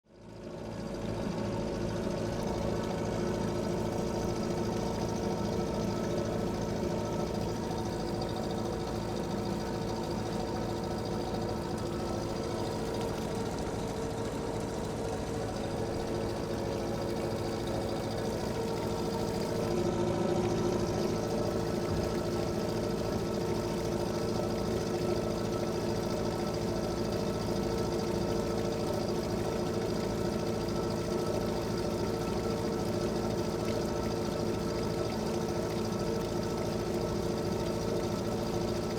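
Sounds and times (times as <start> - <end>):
boat engine chugging: 0.7 - 38.9.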